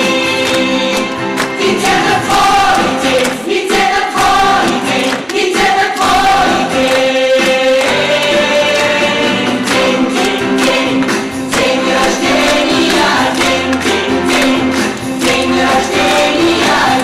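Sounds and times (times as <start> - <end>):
people singing: 0.0 - 17.0
steady percussion beat: 0.0 - 17.0.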